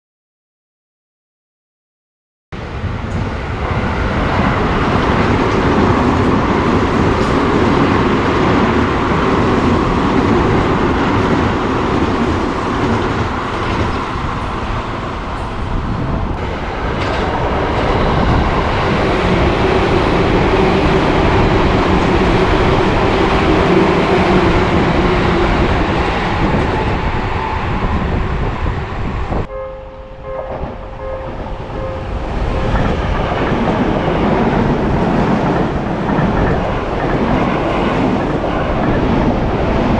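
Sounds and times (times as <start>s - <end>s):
electric train rumbling on rails: 2.6s - 39.9s
steady pitched tone: 29.5s - 34.2s.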